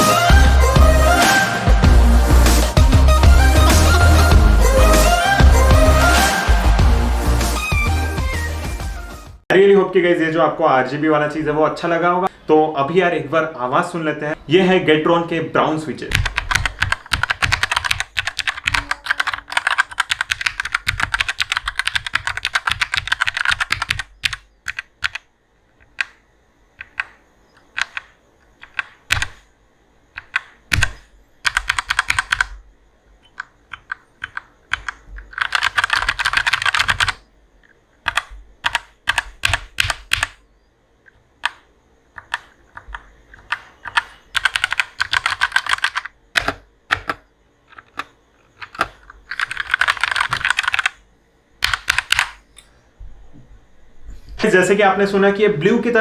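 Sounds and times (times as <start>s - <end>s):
mechanical keyboard typing: 16.1s - 26.2s, 26.8s - 29.4s, 30.2s - 32.6s, 33.2s - 37.2s, 38.0s - 40.4s, 41.4s - 41.6s, 42.2s - 51.0s, 51.6s - 52.4s.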